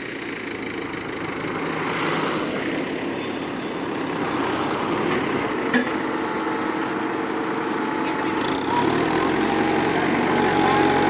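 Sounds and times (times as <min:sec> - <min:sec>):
diesel truck engine running: 0:00.0 - 0:11.0.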